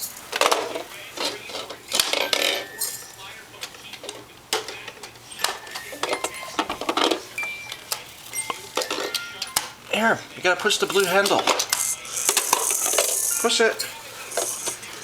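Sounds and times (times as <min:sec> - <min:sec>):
plastic toy pieces clattering: 0:10.6 - 0:14.9.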